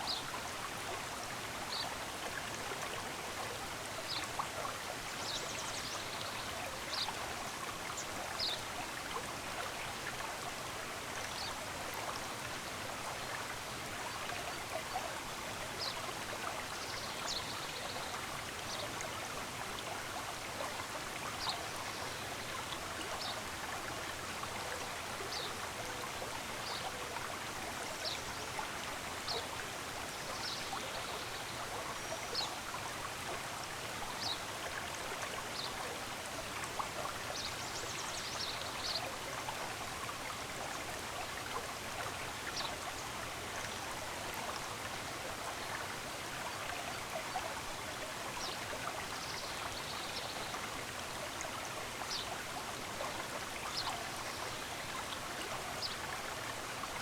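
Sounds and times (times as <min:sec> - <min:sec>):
stream running: 0:00.0 - 0:57.0.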